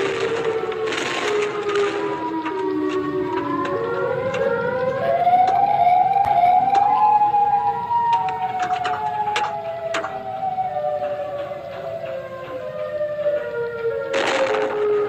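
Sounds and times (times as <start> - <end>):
warning sirens winding: 0.0 - 15.0
sharp clicks: 8.0 - 15.0.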